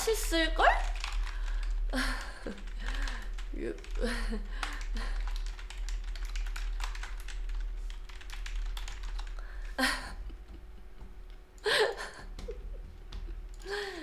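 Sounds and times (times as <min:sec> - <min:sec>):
computer keyboard typing: 0:00.0 - 0:09.8.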